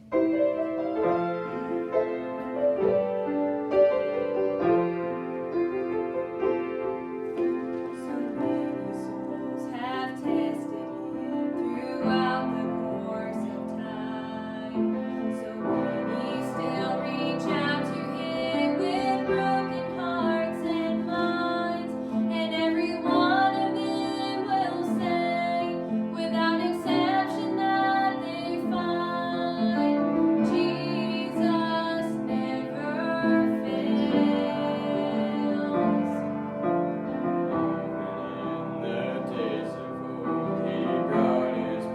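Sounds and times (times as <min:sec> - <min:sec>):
piano music: 0:00.0 - 0:41.9
woman singing: 0:07.8 - 0:36.4.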